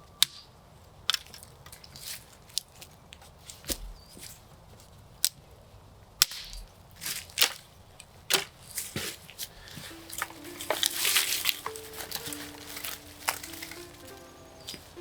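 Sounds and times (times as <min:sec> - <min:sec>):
dry sticks snapping and cracking: 0:00.1 - 0:04.4, 0:05.2 - 0:05.5, 0:06.2 - 0:15.0
soft music notes: 0:09.6 - 0:15.0.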